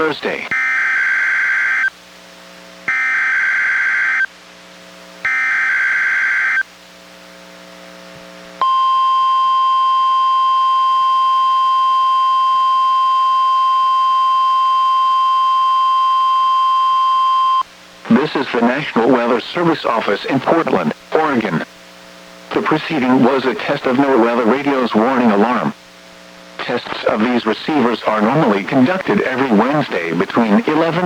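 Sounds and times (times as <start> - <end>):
steady warning alarm tone: 0.5 - 1.9, 2.9 - 4.3, 5.2 - 6.6, 8.6 - 17.6.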